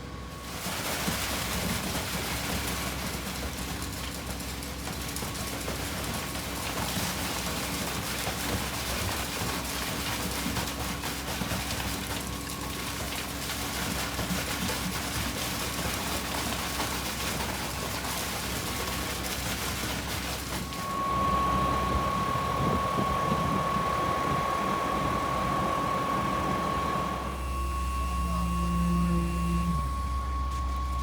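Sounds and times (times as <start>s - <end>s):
engine drone: 16.2s - 31.0s
high whine: 20.7s - 31.0s.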